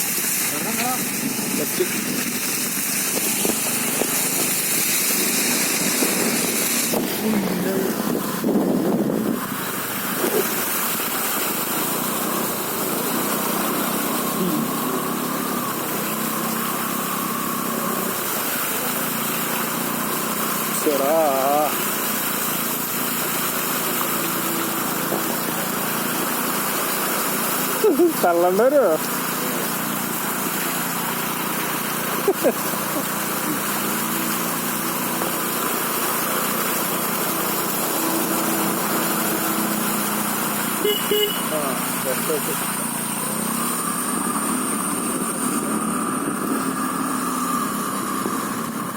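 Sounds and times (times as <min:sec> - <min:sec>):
vehicle engine running: 0:00.0 - 0:48.9
water rushing: 0:00.0 - 0:48.9.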